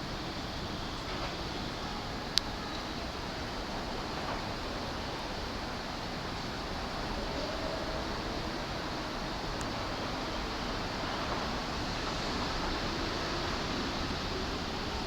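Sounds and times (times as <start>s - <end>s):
railway station rumble and hiss: 0.0s - 15.0s.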